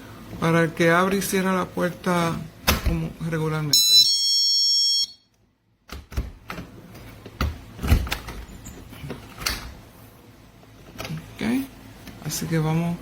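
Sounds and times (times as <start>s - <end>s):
high electronic alarm tone: 3.7s - 5.3s.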